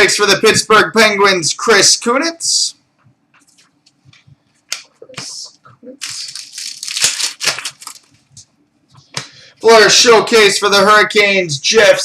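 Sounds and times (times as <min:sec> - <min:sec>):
cards rustling: 0:03.4 - 0:09.2
wrapper crinkling and tearing: 0:06.0 - 0:08.2.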